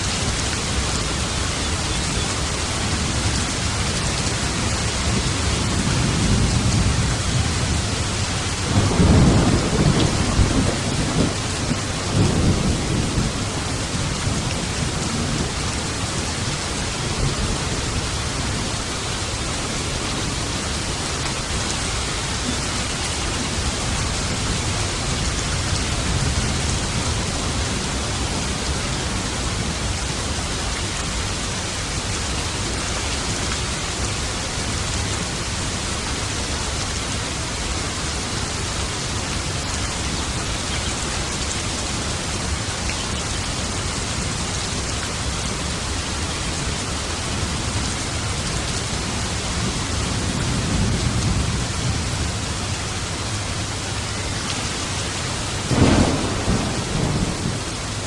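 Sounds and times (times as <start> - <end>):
heavy rain falling: 0.0 - 58.0
low rumble of thunder: 2.9 - 19.0, 49.1 - 53.4, 55.3 - 58.0.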